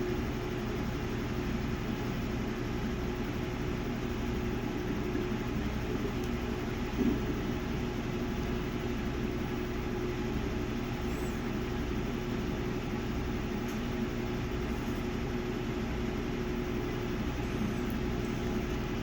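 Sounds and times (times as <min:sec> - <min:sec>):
washing machine spinning: 0:00.0 - 0:19.0.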